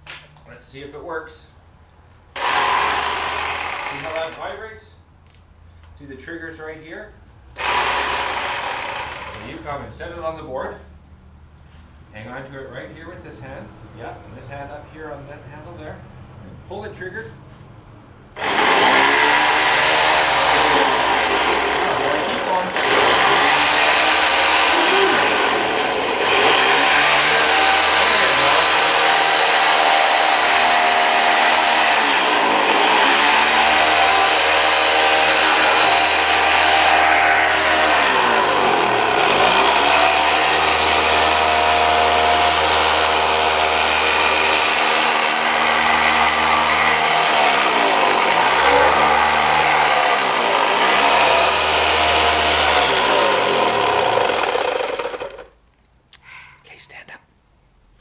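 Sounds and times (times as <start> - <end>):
electric sander on wood: 2.4 - 4.5, 7.6 - 9.6, 18.4 - 55.5.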